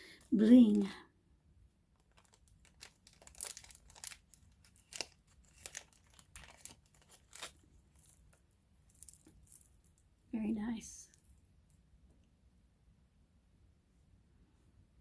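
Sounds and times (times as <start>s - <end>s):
plastic bag crinkling: 2.0s - 9.8s.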